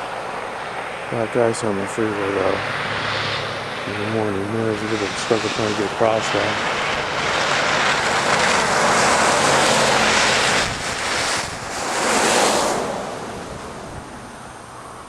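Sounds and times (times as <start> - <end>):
tyres hissing on snowy road: 0.0 - 15.0.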